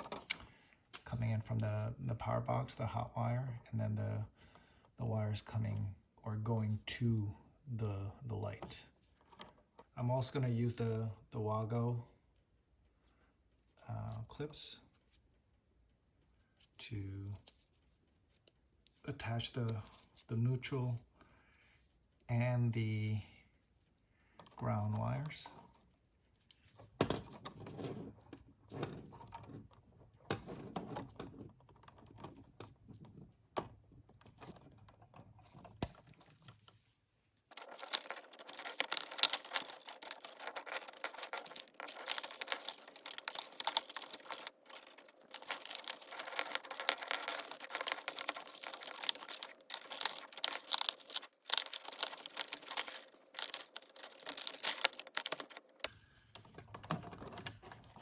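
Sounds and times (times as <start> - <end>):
rustling of wires: 24.6 - 58.0
wire connectors clicking: 37.6 - 56.0.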